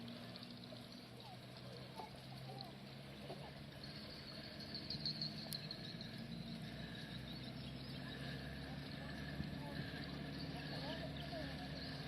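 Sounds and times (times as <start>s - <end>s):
low steady hum: 0.0s - 12.0s
crickets chirring: 3.8s - 8.4s.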